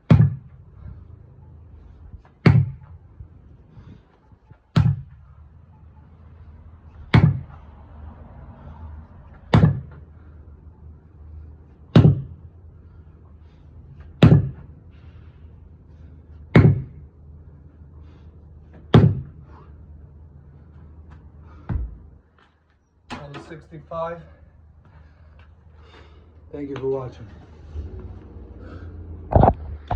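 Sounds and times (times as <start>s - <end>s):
sledgehammer striking a tire: 0.0s - 0.6s, 2.4s - 2.9s, 4.7s - 5.2s, 7.1s - 7.6s, 9.4s - 10.0s, 11.9s - 12.4s, 14.1s - 14.7s, 16.5s - 17.1s, 18.7s - 19.4s.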